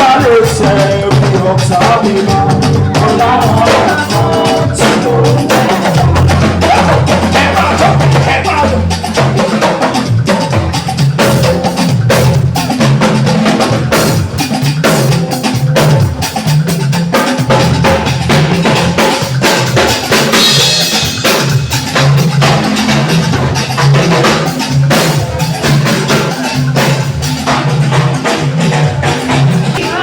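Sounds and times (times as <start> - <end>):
drum kit beat: 0.0 - 30.0
low sustained bass notes: 1.4 - 9.4.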